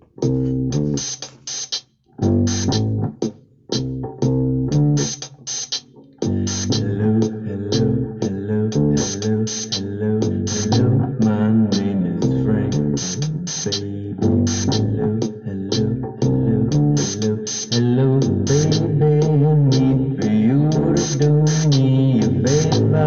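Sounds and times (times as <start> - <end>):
guitar and bass with hits: 0.0 - 23.0.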